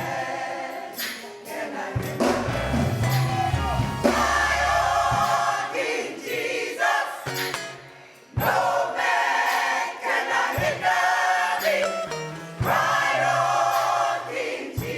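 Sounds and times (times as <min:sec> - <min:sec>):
gospel choir singing: 0:00.0 - 0:14.9
instrumental backing with bass: 0:02.2 - 0:05.6, 0:11.8 - 0:14.1.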